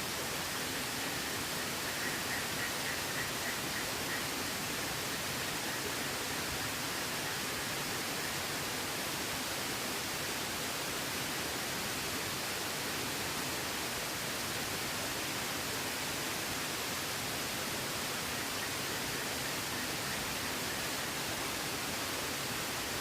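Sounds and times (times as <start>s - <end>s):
water rushing: 0.0s - 23.0s.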